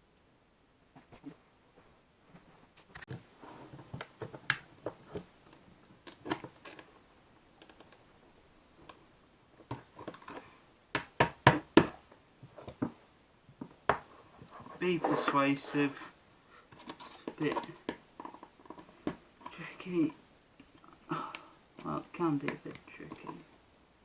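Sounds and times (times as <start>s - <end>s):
small clicks taps and scrapes: 2.8s - 7.0s, 7.6s - 8.0s, 9.6s - 13.0s, 16.7s - 19.6s, 20.6s - 23.4s.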